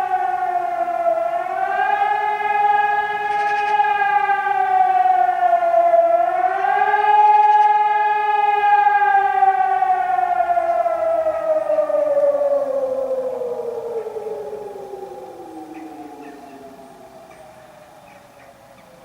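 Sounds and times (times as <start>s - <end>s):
civil defence siren wailing: 0.0s - 19.0s.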